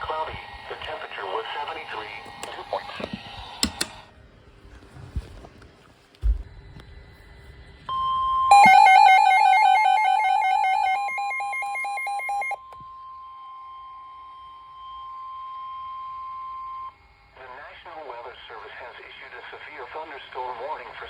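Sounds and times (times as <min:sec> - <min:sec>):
two-pitch alarm beeping: 0:07.9 - 0:17.0
steady alarm tone: 0:07.9 - 0:17.2.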